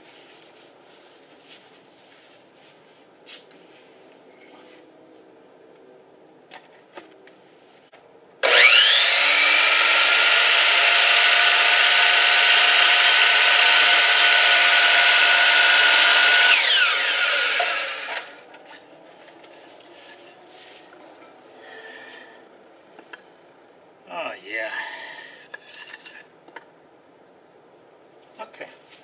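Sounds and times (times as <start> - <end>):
power saw cutting wood: 8.4 - 18.5.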